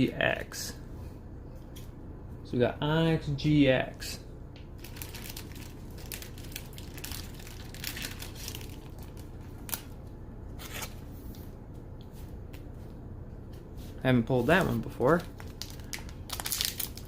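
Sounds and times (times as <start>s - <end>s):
steady low hum: 0.0s - 17.0s
trading cards and wrappers rustling: 4.8s - 9.9s, 14.5s - 17.0s.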